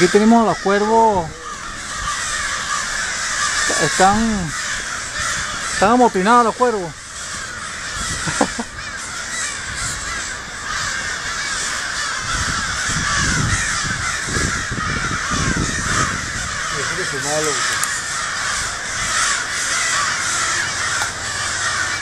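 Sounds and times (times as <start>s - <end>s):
flock of crows cawing: 0.0s - 22.0s.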